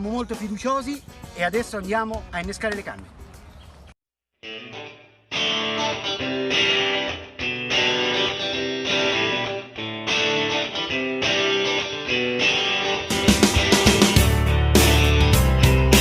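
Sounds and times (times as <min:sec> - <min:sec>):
guitar plucking notes: 0:04.4 - 0:16.0.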